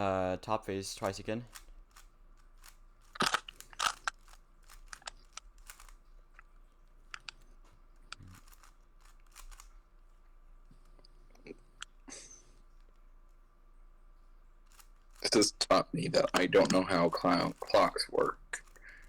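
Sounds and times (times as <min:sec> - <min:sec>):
puzzle cube clicking as twisted: 0:01.0 - 0:07.4, 0:08.1 - 0:09.7.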